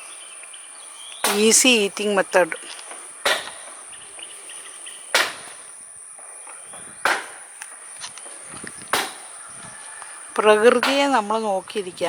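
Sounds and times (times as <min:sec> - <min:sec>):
high-pitched insect chorus: 0:00.0 - 0:12.0
loud sharp knocks: 0:02.9 - 0:03.8, 0:05.1 - 0:07.9, 0:08.8 - 0:09.4.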